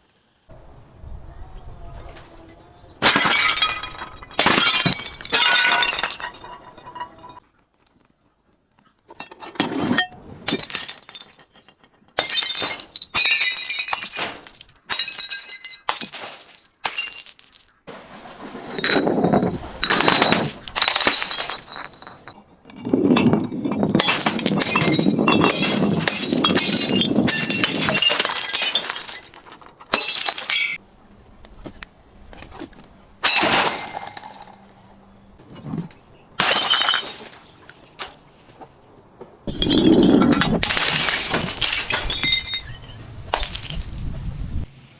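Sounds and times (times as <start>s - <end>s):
glass bottles breaking and crunching: 3.0s - 7.4s, 9.1s - 30.8s, 33.2s - 34.6s, 36.4s - 37.5s, 39.5s - 44.1s.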